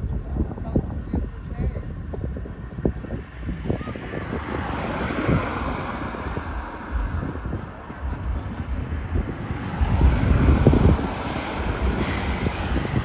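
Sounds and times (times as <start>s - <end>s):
wind buffeting microphone: 0.0s - 13.0s
heavy rain falling: 9.2s - 13.0s.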